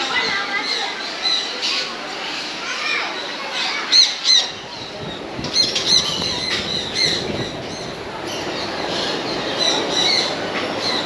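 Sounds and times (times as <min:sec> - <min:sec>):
birds squawking: 0:03.4 - 0:11.0.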